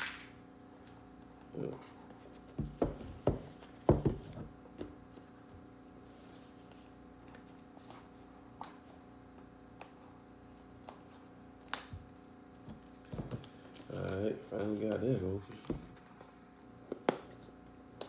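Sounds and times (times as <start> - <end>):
knocks and rustles of packaging: 2.5 - 5.2.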